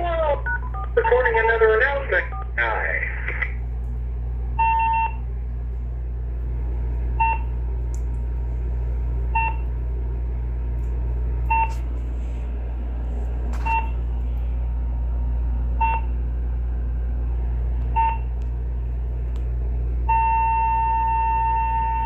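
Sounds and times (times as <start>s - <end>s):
steady low hum: 0.0s - 22.0s
answering machine beeping: 4.6s - 5.2s, 13.6s - 14.0s, 20.1s - 22.0s.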